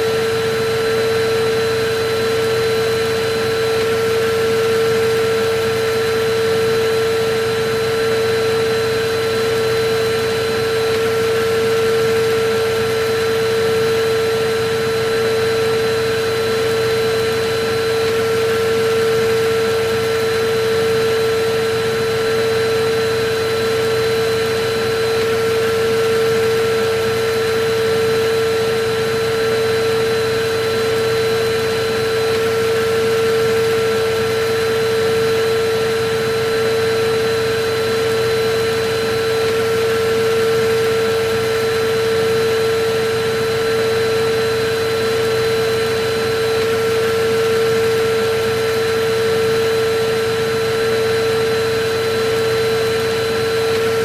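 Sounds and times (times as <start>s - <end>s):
vacuum cleaner running: 0.0s - 54.0s.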